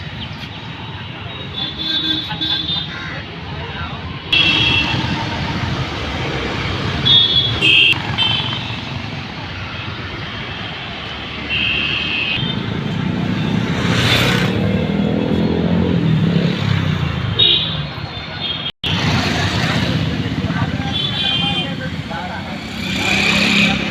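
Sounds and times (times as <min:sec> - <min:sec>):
road traffic: 0:00.0 - 0:23.9
vehicle horns honking: 0:01.4 - 0:02.9, 0:04.3 - 0:05.5, 0:06.8 - 0:09.0, 0:09.7 - 0:12.6, 0:17.2 - 0:19.0, 0:20.8 - 0:22.0.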